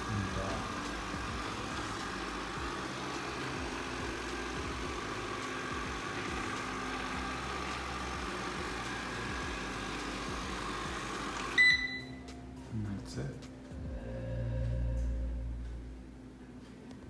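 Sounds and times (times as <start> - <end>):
robot vacuum whirring: 0.0 - 11.7.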